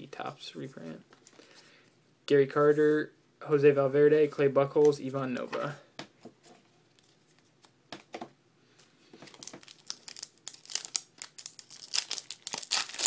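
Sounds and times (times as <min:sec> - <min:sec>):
plastic wrapper crinkling and tearing: 0:09.2 - 0:13.0.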